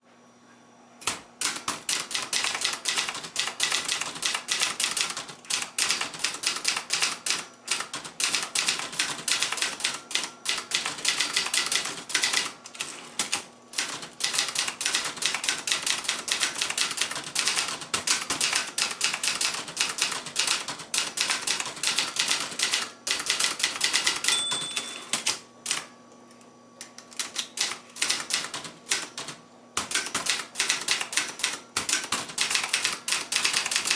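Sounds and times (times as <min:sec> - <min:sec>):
manual typewriter key strikes: 0:01.0 - 0:12.5, 0:13.2 - 0:25.8, 0:27.2 - 0:33.9
typewriter bell ringing: 0:23.8 - 0:25.3.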